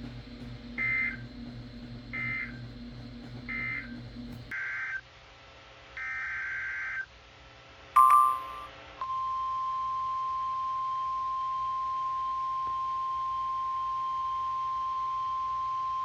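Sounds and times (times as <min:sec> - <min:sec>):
low hum: 0:00.0 - 0:04.5.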